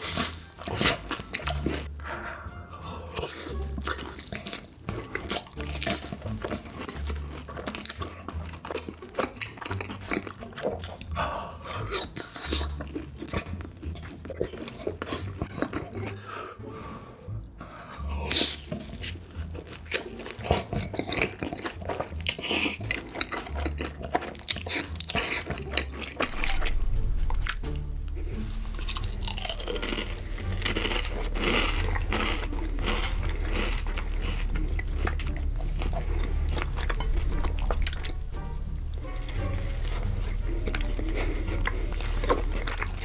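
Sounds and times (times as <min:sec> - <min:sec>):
crunching and chewing food: 0:00.0 - 0:16.6, 0:17.4 - 0:43.0
steady low hum: 0:26.7 - 0:43.0.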